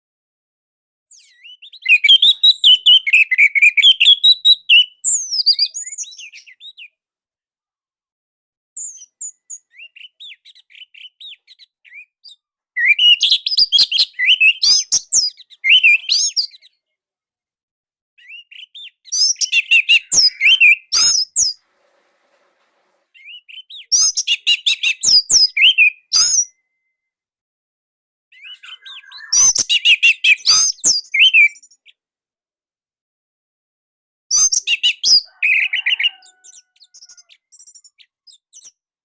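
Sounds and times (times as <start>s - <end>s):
bird singing whistled phrases: 1.1s - 6.9s, 8.8s - 16.8s, 18.2s - 21.6s, 23.2s - 27.0s, 28.3s - 31.9s
bird twittering: 18.2s - 22.2s, 28.4s - 31.8s.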